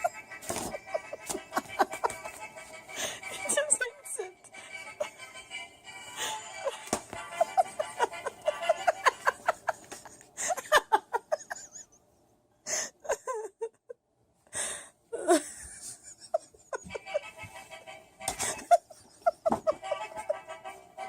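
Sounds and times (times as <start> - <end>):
light background music: 0.0 - 9.4, 16.9 - 18.8, 19.7 - 21.0.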